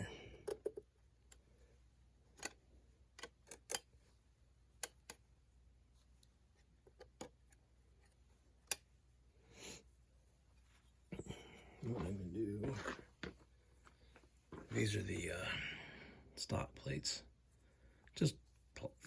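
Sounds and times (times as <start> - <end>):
light clicks and taps of screws: 0.4 - 1.6, 2.3 - 4.0, 4.8 - 5.3, 6.1 - 8.9.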